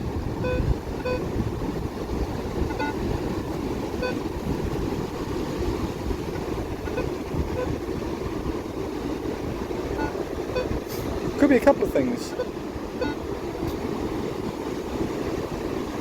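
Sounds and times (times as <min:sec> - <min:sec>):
low rumble of noise: 0:00.0 - 0:16.0
metal detector beeping: 0:00.4 - 0:01.3, 0:02.6 - 0:03.0, 0:04.0 - 0:04.2, 0:06.8 - 0:07.8, 0:10.0 - 0:10.8, 0:12.3 - 0:13.2.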